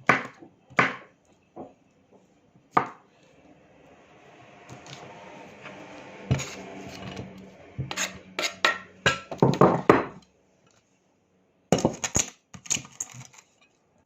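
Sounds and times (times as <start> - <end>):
knife chopping on wooden board: 0.0 - 1.1, 2.7 - 3.0, 6.3 - 10.2
knife scraping and slicing: 4.7 - 9.2.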